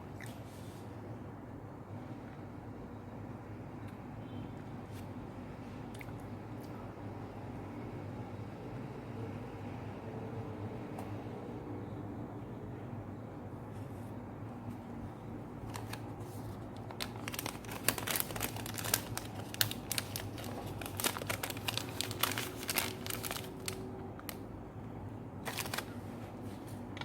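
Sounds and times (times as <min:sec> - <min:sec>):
low steady hum: 0:00.0 - 0:27.0
crinkling and clicking: 0:15.6 - 0:24.4, 0:25.4 - 0:25.9.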